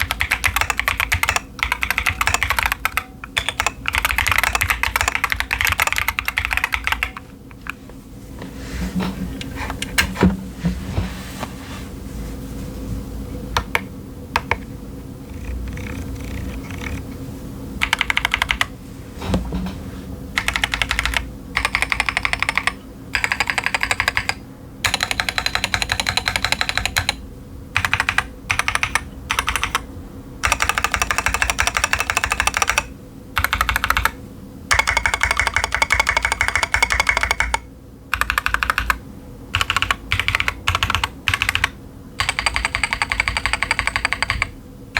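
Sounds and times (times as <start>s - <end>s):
typing on mechanical keyboard: 0.0s - 7.8s, 13.6s - 14.7s, 15.3s - 17.0s, 17.8s - 18.7s, 20.4s - 27.2s, 27.8s - 44.6s.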